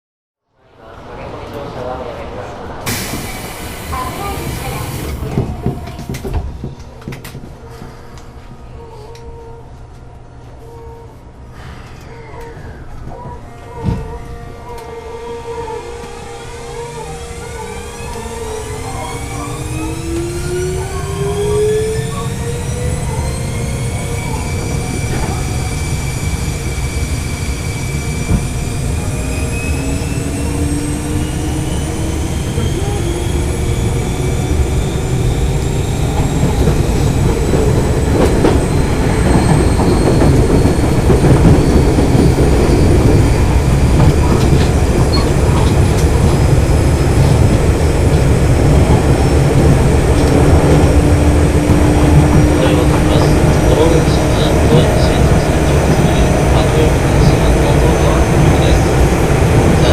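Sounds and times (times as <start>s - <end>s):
train wheels on rails: 2.8s - 8.6s, 15.8s - 59.9s
electric train motor whine: 12.4s - 59.9s.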